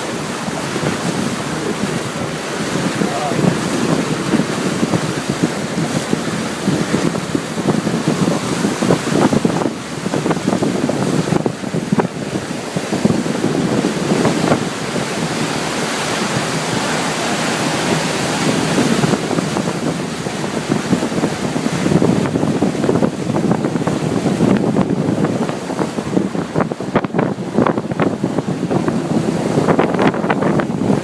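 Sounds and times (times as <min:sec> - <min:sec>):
water rushing: 0:00.0 - 0:31.0
wind buffeting microphone: 0:00.0 - 0:31.0.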